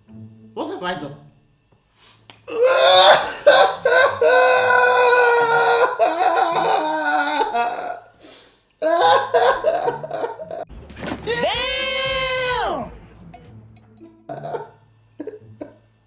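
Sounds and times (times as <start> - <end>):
boy fake crying: 2.5 - 8.1, 8.8 - 10.6, 14.3 - 15.7.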